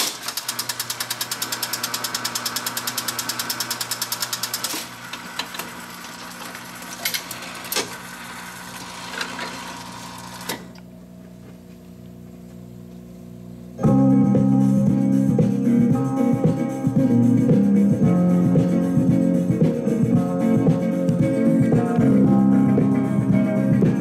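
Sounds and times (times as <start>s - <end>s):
motor hum: 0.0s - 13.5s.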